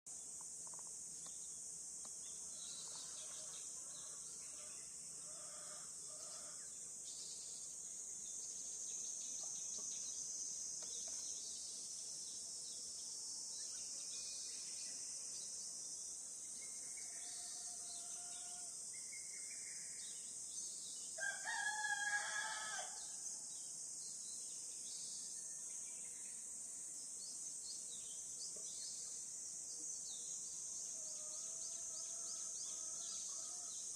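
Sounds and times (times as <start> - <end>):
rooster crowing: 21.2 - 23.0.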